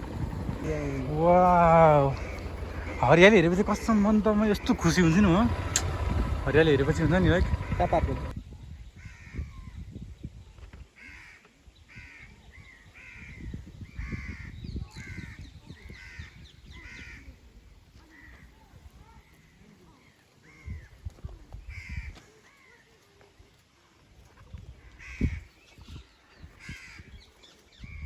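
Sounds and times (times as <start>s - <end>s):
crows cawing: 0.0s - 8.3s
low rumbling bursts: 0.0s - 8.4s.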